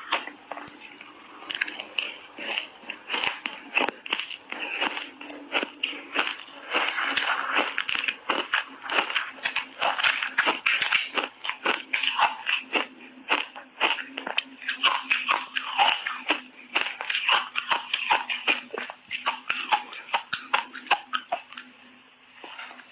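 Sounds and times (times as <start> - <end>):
crunching of shaved ice being chewed: 0.0 - 22.9.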